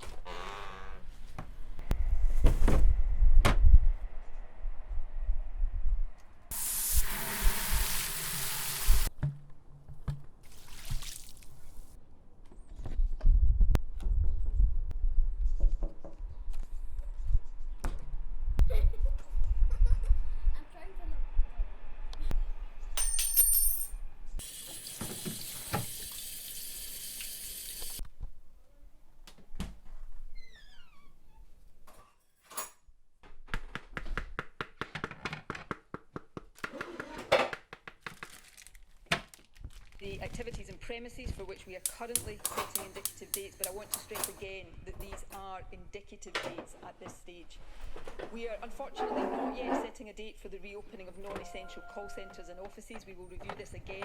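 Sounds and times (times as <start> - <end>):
low rumble: 1.9 - 6.5
water running: 6.5 - 9.1, 10.5 - 12.0, 24.4 - 28.0
high clink: 23.0 - 24.0.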